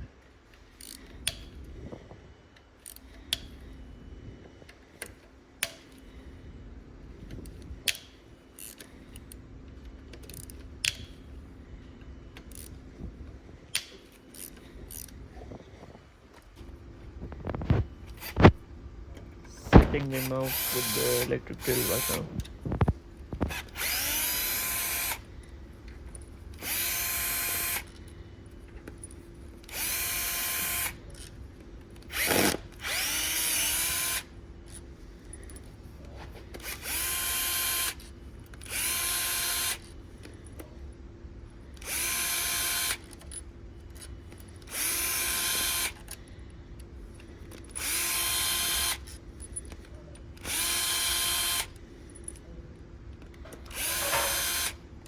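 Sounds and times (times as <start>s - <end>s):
electric drill spinning: 19.9s - 22.4s, 23.4s - 25.3s, 26.6s - 28.0s, 29.6s - 31.0s, 32.0s - 34.3s, 36.6s - 40.0s, 41.8s - 43.2s, 44.6s - 46.0s, 47.7s - 49.2s, 50.4s - 51.8s, 53.7s - 54.8s.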